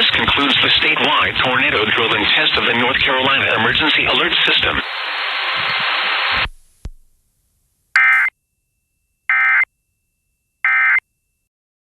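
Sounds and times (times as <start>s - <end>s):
warbling data tone bursts: 8.0s - 8.3s.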